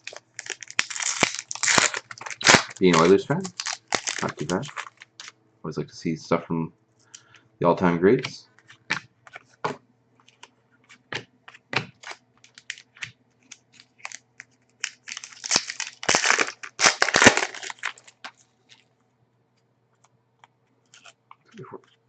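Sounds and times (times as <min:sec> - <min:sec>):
cards crinkling and rustling: 0:00.0 - 0:05.4, 0:08.2 - 0:18.9, 0:20.9 - 0:21.2.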